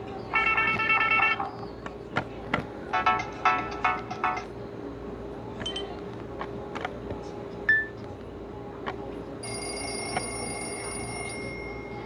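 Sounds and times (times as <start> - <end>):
phone ringtone: 0.3 - 1.6, 3.0 - 4.5, 9.4 - 12.0.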